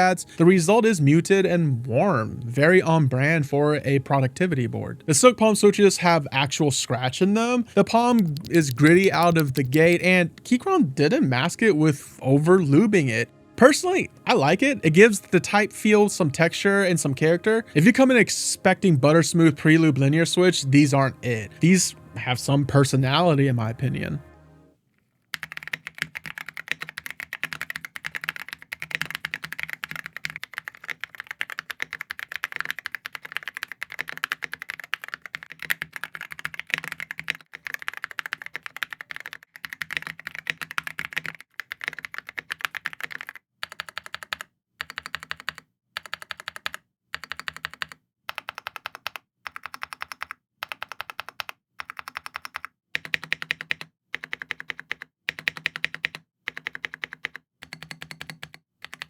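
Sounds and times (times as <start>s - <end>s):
typing on mechanical keyboard: 7.9s - 10.0s, 25.3s - 59.0s.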